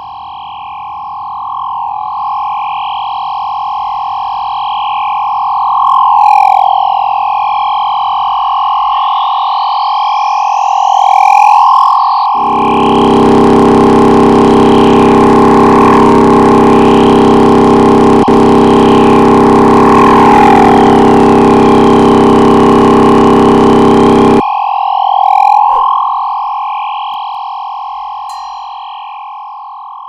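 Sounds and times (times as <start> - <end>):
warbling electronic tone: 12.3 - 27.6
heavy droning hum: 12.4 - 24.4.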